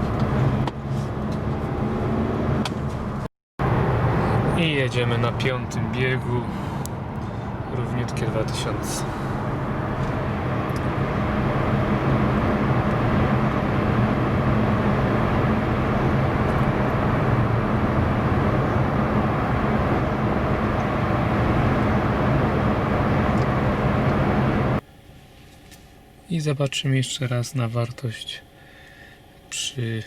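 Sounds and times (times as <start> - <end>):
tyre and road noise: 0.0 - 25.8
car engine hum: 0.0 - 26.3.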